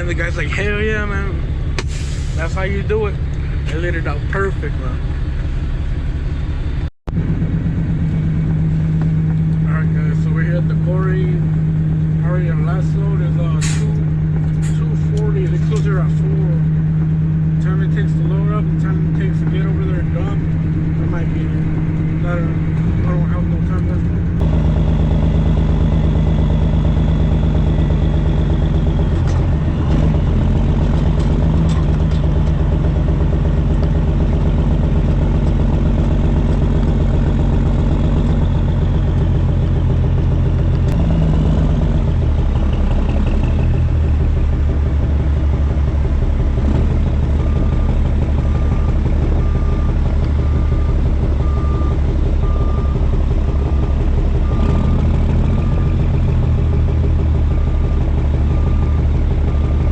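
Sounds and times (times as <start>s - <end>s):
diesel truck engine running: 0.0s - 59.9s
backup alarm beeping: 47.4s - 54.9s.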